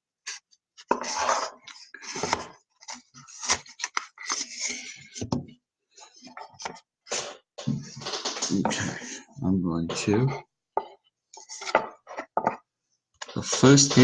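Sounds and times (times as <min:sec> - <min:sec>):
cards and wrappers rustling: 0:00.9 - 0:05.2.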